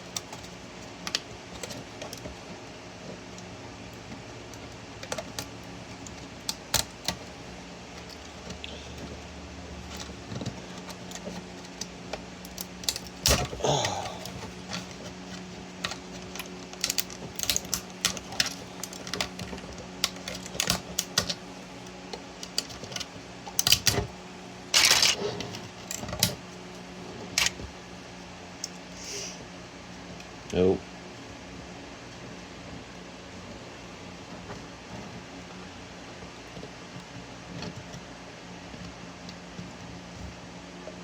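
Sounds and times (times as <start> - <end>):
plastic clicking and snapping: 14.2 - 24.1.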